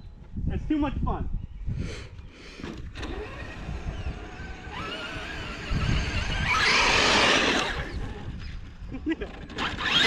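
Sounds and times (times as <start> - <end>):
vehicle engine revving with whine: 3.0 - 8.3.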